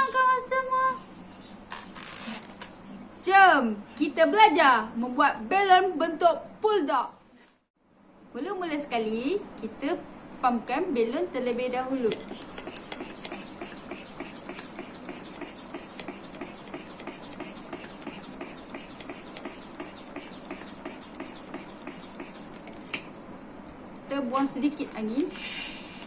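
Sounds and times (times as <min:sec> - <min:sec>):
hand pump inflating balloon: 0:12.1 - 0:22.6.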